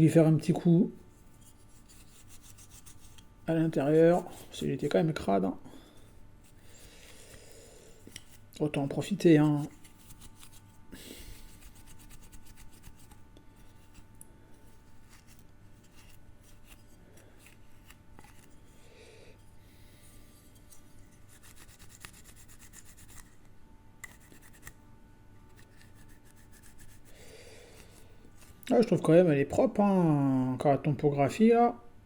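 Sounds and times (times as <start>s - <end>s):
wipe rubbing on toy car: 1.1s - 3.2s, 11.4s - 18.6s.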